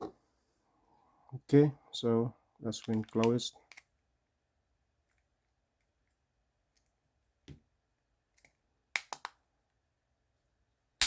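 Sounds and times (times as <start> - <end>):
plastic key fob clicks: 2.8 - 3.9.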